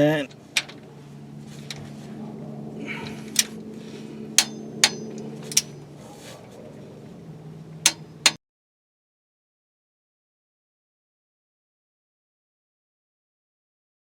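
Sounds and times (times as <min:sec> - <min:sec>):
steady low hum: 0:00.0 - 0:08.4
torque wrench clicks: 0:04.4 - 0:05.7.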